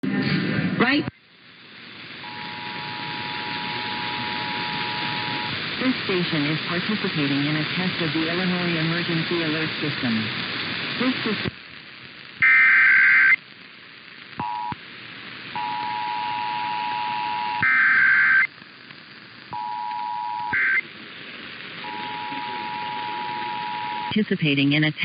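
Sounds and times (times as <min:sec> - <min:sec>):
radio hiss: 0:00.0 - 0:25.0
shrill digital header bursts: 0:12.4 - 0:13.4, 0:15.6 - 0:18.5, 0:19.5 - 0:20.8.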